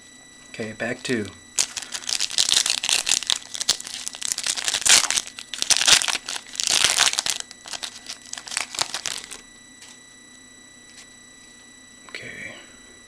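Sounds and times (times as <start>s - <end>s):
wrapper torn open and crinkled: 1.6s - 9.4s.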